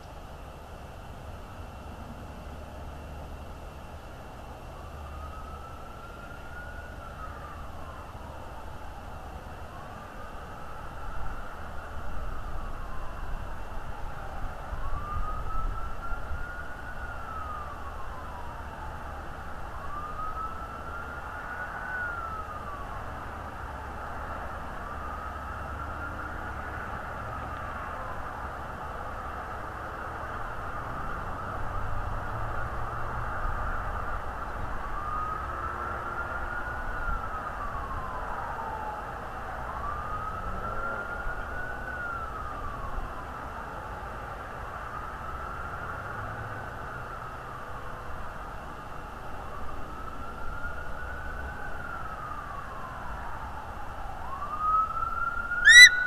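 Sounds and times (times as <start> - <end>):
siren wailing: 4.8 - 8.4, 13.8 - 26.8, 49.6 - 56.0.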